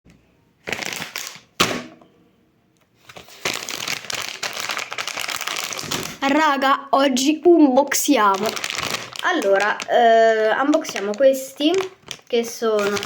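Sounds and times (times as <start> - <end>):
plastic packet crinkling: 0.6 - 1.6, 3.0 - 6.6, 7.2 - 13.0.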